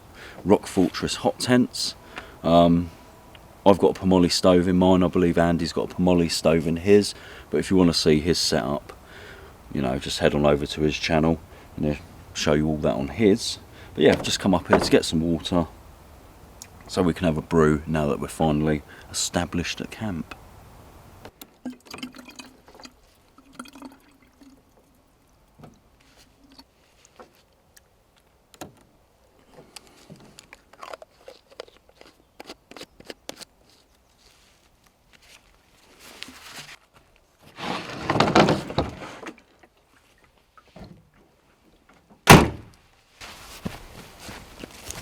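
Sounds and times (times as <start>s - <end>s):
handling clicks and knocks: 14.0s - 15.5s
water pouring: 21.6s - 25.3s
sharp loud thunk: 42.2s - 42.7s.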